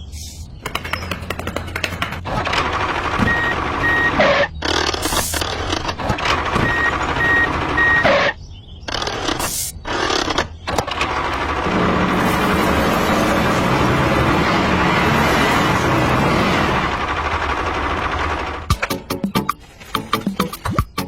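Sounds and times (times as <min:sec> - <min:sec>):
engine and machinery noise: 0:00.0 - 0:21.0
reversing alarm beeps: 0:03.2 - 0:04.5, 0:06.6 - 0:08.4.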